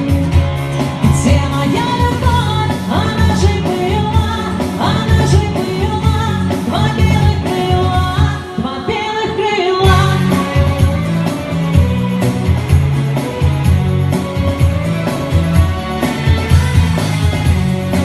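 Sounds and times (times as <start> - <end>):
bass and instruments playing: 0.0 - 8.8, 9.8 - 18.0
person singing: 0.0 - 11.9.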